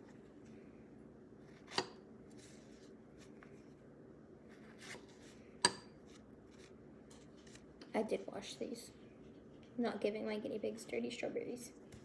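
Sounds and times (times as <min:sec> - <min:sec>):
knife slicing strawberries: 0:01.4 - 0:03.3.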